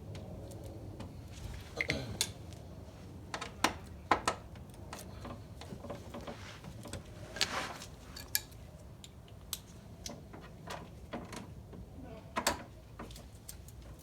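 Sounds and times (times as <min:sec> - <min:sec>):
scraping rustle: 0:05.8 - 0:08.4.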